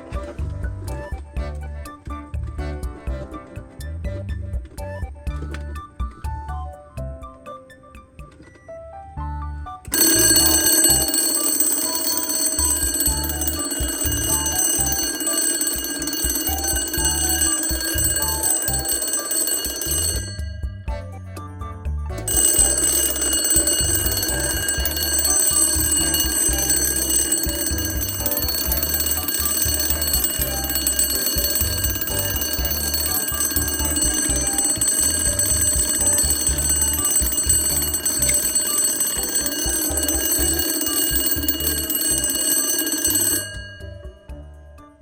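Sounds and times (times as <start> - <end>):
alarm clock bells ringing: 9.9 - 21.2, 22.3 - 45.0.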